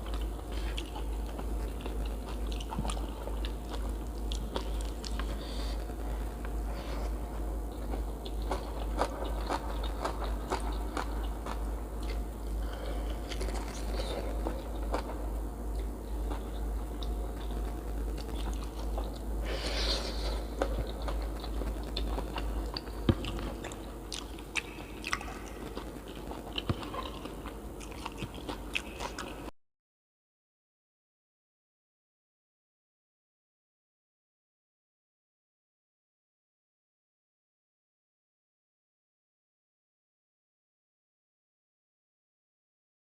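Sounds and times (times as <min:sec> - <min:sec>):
person chewing crunchy food: 0:00.0 - 0:29.5
steady low hum: 0:00.0 - 0:29.5.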